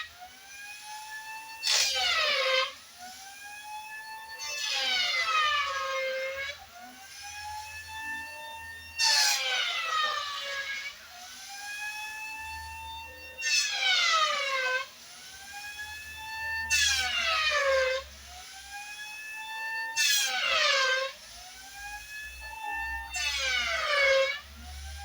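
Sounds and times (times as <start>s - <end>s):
electric planer cutting wood: 0.0s - 25.0s.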